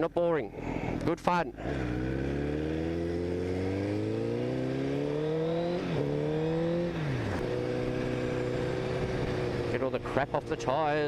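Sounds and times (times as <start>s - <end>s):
motorcycle engine accelerating: 0.6s - 11.0s.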